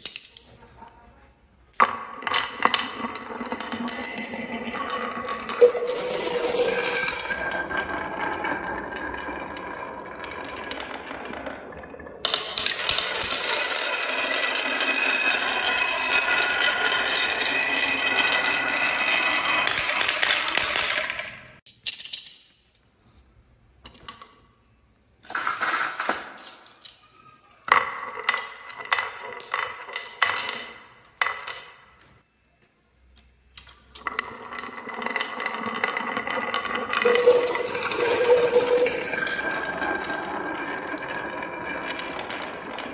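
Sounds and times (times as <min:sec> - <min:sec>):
marbles clicking on wood: 0:01.7 - 0:22.3, 0:27.6 - 0:31.8, 0:33.6 - 0:42.9
marbles rattling down wooden track: 0:01.8 - 0:21.5, 0:25.3 - 0:26.9, 0:27.7 - 0:31.8, 0:33.9 - 0:42.9.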